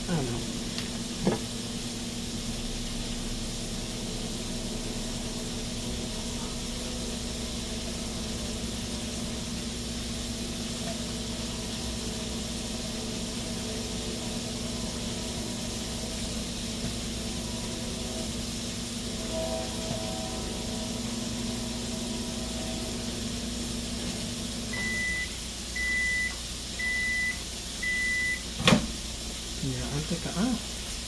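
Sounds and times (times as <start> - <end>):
meat sizzling in a pan: 0.0 - 31.0.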